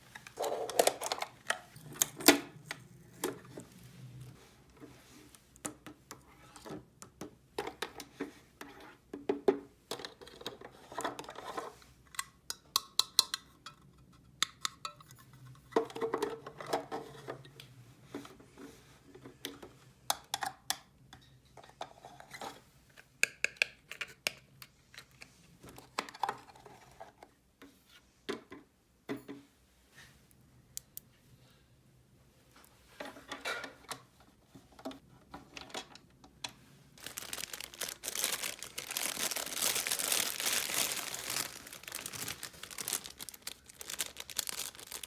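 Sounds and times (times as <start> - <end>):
plastic toy pieces clattering: 0.3 - 2.3, 37.0 - 45.0.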